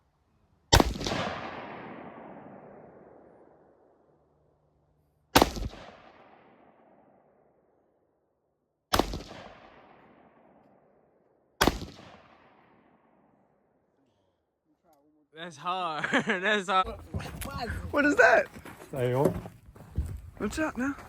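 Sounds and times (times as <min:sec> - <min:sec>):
rifle shots echoing: 0:00.7 - 0:03.8, 0:05.3 - 0:07.4, 0:08.9 - 0:11.0, 0:11.6 - 0:13.4.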